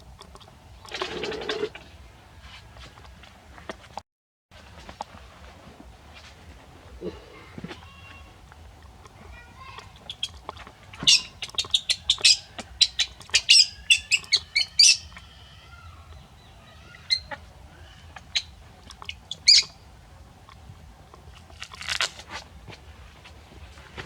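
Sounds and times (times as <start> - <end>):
animal high-pitched chirps: 11.0 - 15.4, 16.8 - 19.8.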